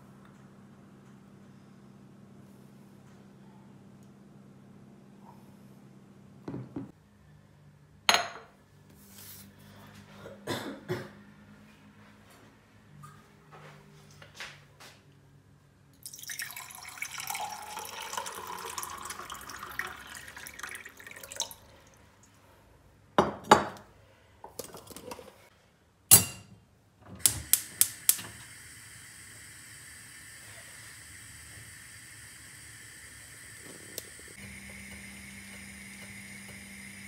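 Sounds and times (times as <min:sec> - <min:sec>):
liquid poured into a glass: 0:16.0 - 0:22.0.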